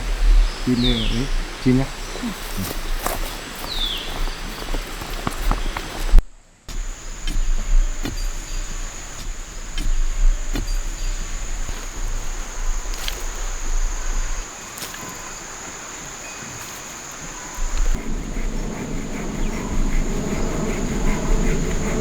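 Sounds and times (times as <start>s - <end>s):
low rumble: 0.0s - 3.3s, 17.6s - 22.0s
insects buzzing: 0.0s - 22.0s.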